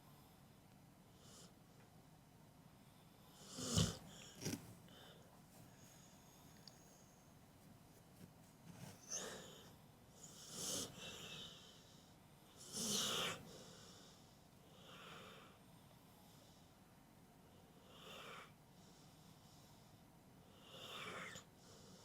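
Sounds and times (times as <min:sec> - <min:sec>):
dog snoring: 0:03.3 - 0:04.6, 0:10.2 - 0:12.0, 0:12.6 - 0:14.2, 0:20.6 - 0:22.0.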